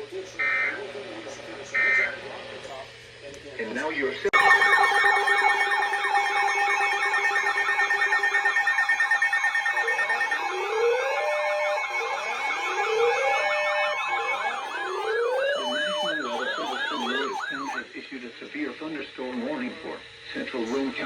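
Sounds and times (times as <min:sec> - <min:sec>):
electronic sirens yelping: 0:04.4 - 0:17.8
sirens wailing: 0:04.4 - 0:17.8
steady alert tones: 0:04.4 - 0:17.8.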